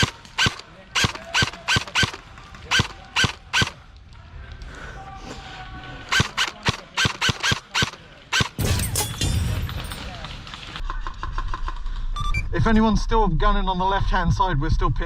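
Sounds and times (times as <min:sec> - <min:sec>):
airsoft rifle shots: 0:00.0 - 0:03.8, 0:06.1 - 0:09.2.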